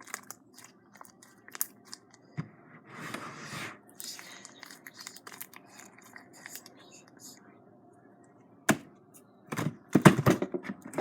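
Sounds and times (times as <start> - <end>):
slime squelching: 0.0 - 2.4, 3.9 - 7.4.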